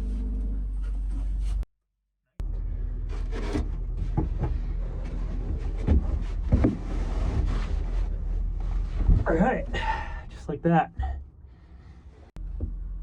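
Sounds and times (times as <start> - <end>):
steady low rumble: 2.4 - 13.0
knocks and thumps on plywood: 3.5 - 4.7, 5.5 - 7.0.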